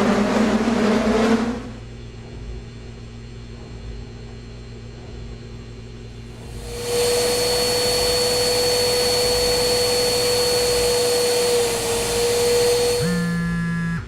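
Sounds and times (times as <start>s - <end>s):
electric motor machine whining: 6.4s - 14.0s.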